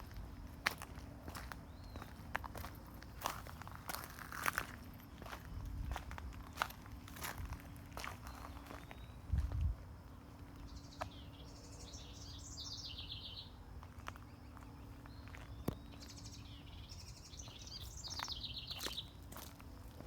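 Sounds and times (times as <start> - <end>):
songbird chirping: 0.0 - 20.0.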